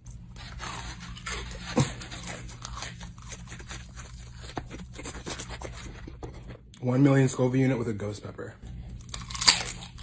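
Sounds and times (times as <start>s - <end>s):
crunchy food chewing: 0.0s - 6.7s, 8.9s - 10.0s.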